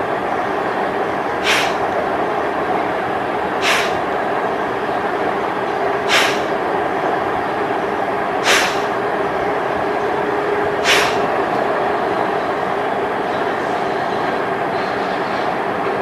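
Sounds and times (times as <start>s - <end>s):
sharp nasal exhalations: 1.4s - 1.8s, 3.6s - 4.0s, 6.1s - 6.5s, 8.4s - 8.9s, 10.8s - 11.2s.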